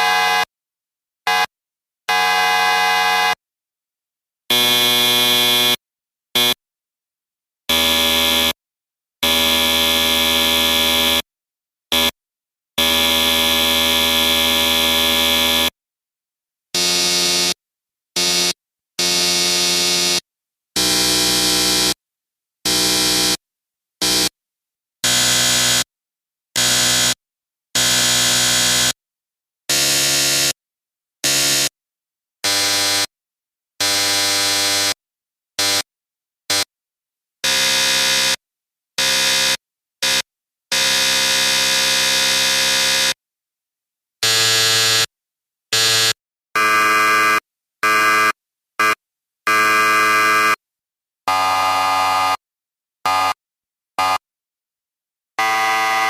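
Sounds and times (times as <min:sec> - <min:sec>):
electric buzzer blasts: 0:00.0 - 0:00.5, 0:01.3 - 0:01.5, 0:02.1 - 0:03.4, 0:04.5 - 0:05.8, 0:07.7 - 0:08.6, 0:16.8 - 0:17.6, 0:18.2 - 0:22.0, 0:22.7 - 0:23.4, 0:24.0 - 0:24.4, 0:25.0 - 0:25.9, 0:26.6 - 0:27.2, 0:27.8 - 0:29.0, 0:29.7 - 0:30.6, 0:31.2 - 0:31.8, 0:32.4 - 0:33.1, 0:33.8 - 0:35.0, 0:36.5 - 0:36.7, 0:37.4 - 0:38.4, 0:39.0 - 0:43.2, 0:44.2 - 0:45.1, 0:45.7 - 0:50.6, 0:51.3 - 0:52.4, 0:53.0 - 0:53.4, 0:54.0 - 0:54.2, 0:55.4 - 0:56.0.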